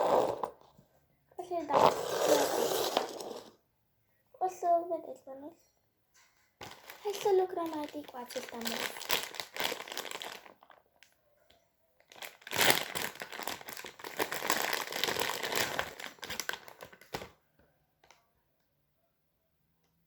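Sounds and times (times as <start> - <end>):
packaging crinkling: 6.6 - 10.8, 12.1 - 17.3.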